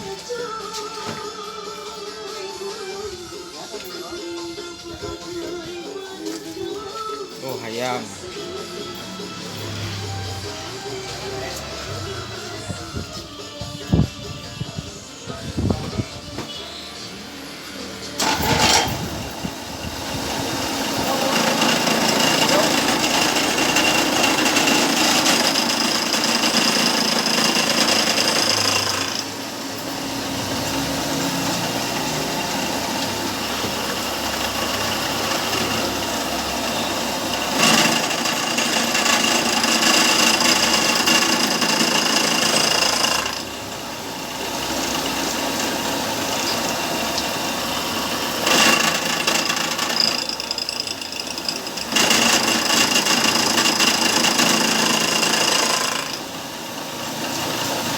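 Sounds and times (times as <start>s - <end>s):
milling machine whine: 4.7s - 57.9s
rough rattling cutting noise: 18.1s - 56.4s.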